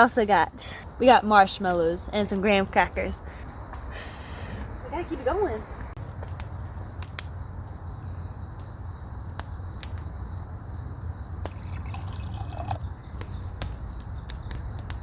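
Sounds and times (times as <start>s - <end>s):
campfire crackling: 0.0s - 15.0s
sharp fire pops: 6.0s - 10.6s, 12.8s - 15.0s.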